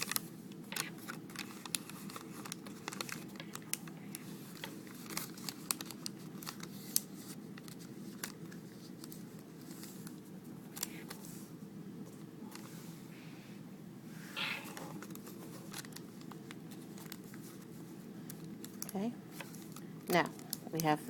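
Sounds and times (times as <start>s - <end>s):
paper crinkling: 0.0s - 11.4s, 14.4s - 20.9s.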